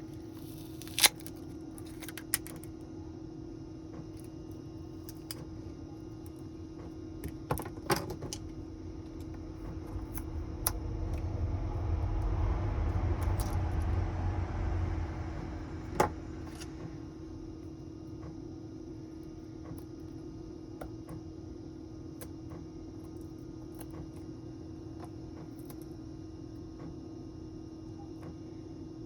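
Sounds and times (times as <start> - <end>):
steady faint hum: 0.0 - 20.9.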